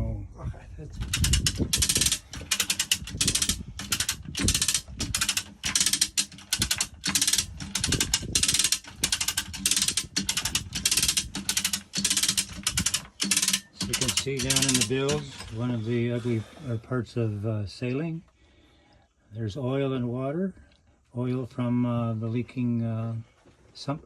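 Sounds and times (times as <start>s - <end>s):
ratcheting hoist clicking: 1.0s - 15.8s.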